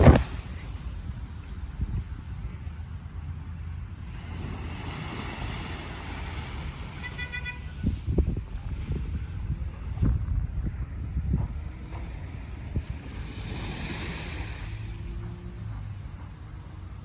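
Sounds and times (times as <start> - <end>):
wind buffeting microphone: 0.0 - 2.9, 7.6 - 17.0
road traffic: 0.0 - 17.0
car horn: 6.9 - 8.0
vehicle passing: 11.3 - 17.0.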